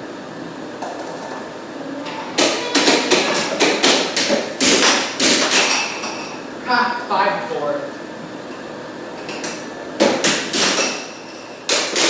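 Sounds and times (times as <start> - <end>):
air hockey puck clacking: 2.1 - 6.4, 9.2 - 12.0.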